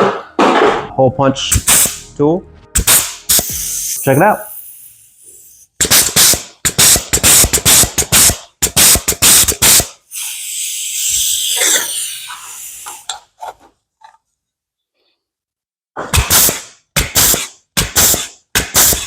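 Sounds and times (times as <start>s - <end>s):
air tool exhaust bursts: 2.9s - 13.0s
escaping air hiss: 3.3s - 5.7s, 10.1s - 13.1s.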